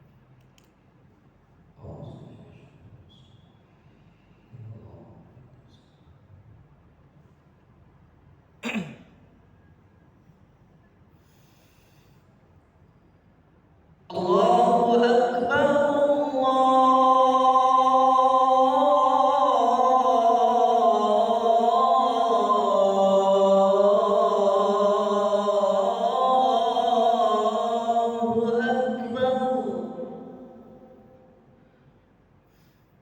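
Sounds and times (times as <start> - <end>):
man singing call to prayer: 14.1 - 31.4.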